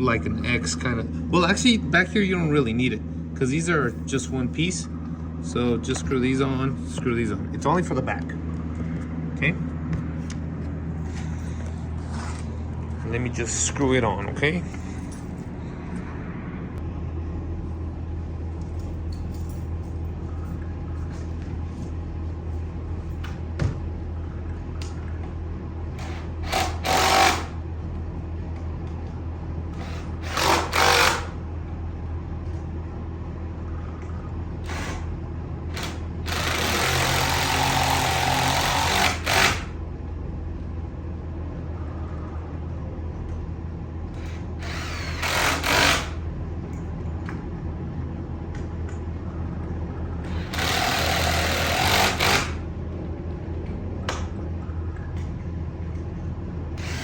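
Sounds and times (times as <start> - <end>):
steady low hum: 0.0 - 57.0
cordless drill driving bolts: 26.0 - 27.6, 29.8 - 31.4, 34.7 - 35.0, 35.8 - 39.7, 44.2 - 46.2, 50.3 - 52.6, 56.8 - 57.0.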